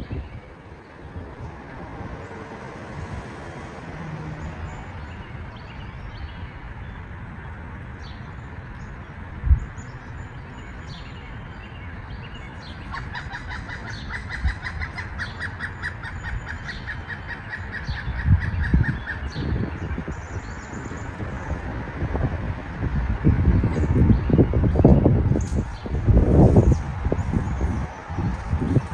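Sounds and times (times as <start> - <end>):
woodpecker calling: 12.2 - 21.3.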